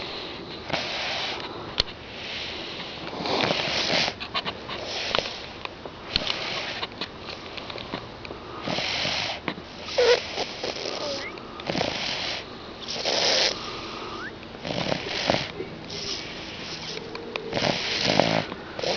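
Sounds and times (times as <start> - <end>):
snoring through congested nose: 2.4 - 4.2, 8.6 - 18.9.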